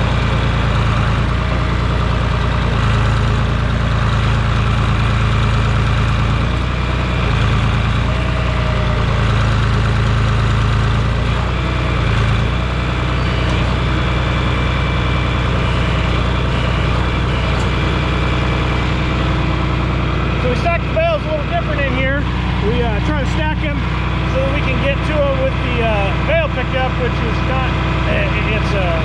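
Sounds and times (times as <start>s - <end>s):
heavy engine humming: 0.0s - 29.0s.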